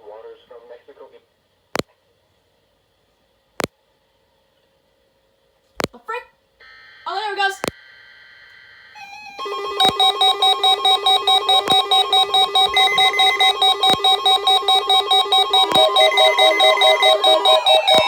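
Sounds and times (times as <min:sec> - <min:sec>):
fast electronic melody: 0:09.0 - 0:18.0.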